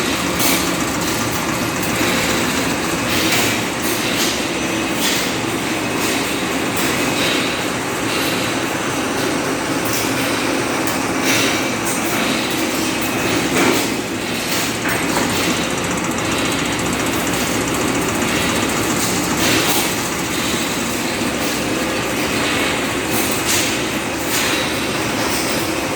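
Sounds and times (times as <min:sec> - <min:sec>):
capsule machine clattering: 0:00.0 - 0:07.4, 0:11.4 - 0:25.9
sharp machine clacks: 0:00.0 - 0:07.4, 0:11.2 - 0:25.9.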